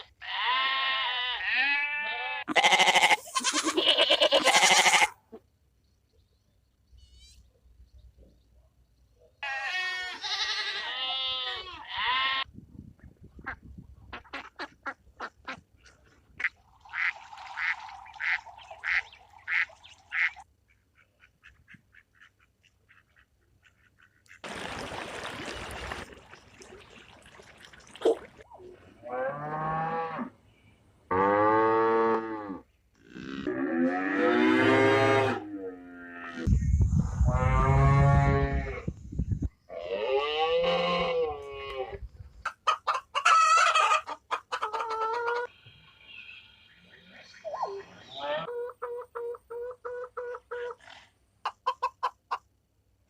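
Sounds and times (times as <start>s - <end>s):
duck quacks: 13.4s - 15.6s, 16.4s - 24.4s.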